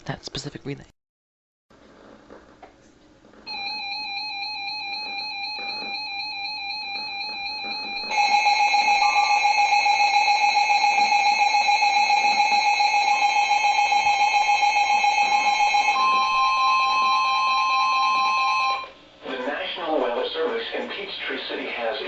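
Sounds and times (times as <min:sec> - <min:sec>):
electronic alarm tone: 0:03.5 - 0:19.0.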